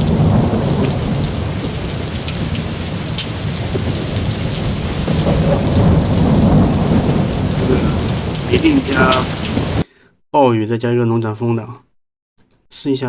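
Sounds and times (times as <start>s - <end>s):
heavy rain: 0.0s - 9.8s
low rumble of thunder: 0.0s - 9.8s
raindrop ticks: 0.0s - 9.8s.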